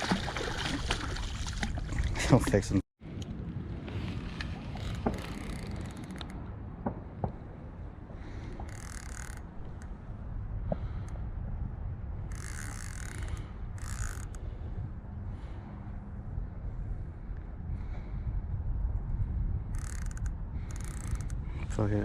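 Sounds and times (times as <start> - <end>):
fishing reel ratcheting: 8.6 - 9.5, 12.3 - 14.4, 19.7 - 21.4.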